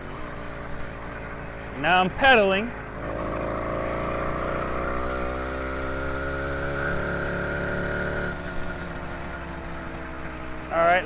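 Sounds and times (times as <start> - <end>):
two-stroke engine buzzing: 0.0 - 11.0.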